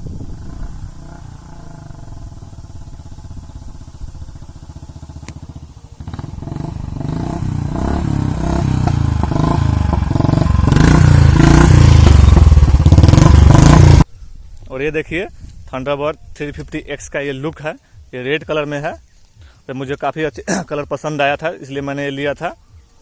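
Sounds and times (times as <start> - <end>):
motorcycle engine thumping: 1.8 - 14.0.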